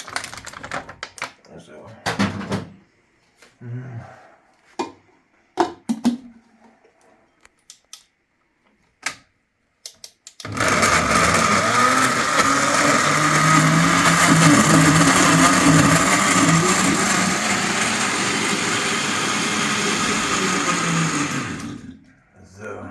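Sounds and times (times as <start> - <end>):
electric blender whining: 10.4 - 22.0.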